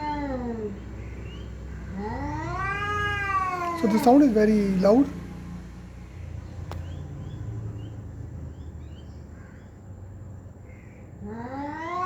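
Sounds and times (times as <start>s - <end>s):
cat yowling: 0.0s - 0.8s, 1.9s - 4.3s, 11.2s - 12.0s.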